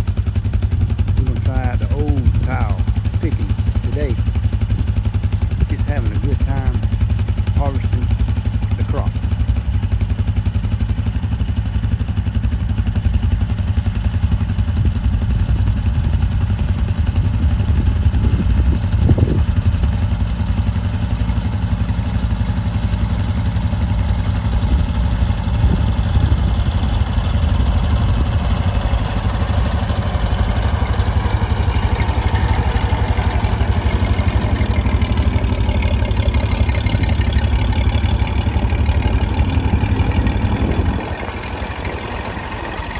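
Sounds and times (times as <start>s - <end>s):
tractor engine clattering: 0.0s - 42.9s
low heavy rumble: 0.6s - 9.7s, 14.6s - 20.4s, 23.7s - 42.9s
high-pitched machinery noise: 25.5s - 42.9s.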